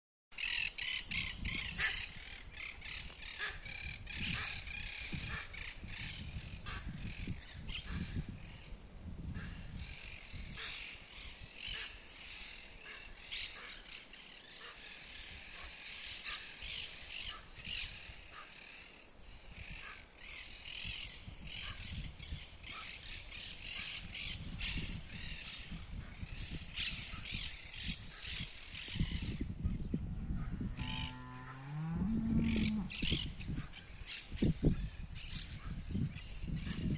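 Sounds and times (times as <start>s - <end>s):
cow mooing: 30.7s - 33.0s.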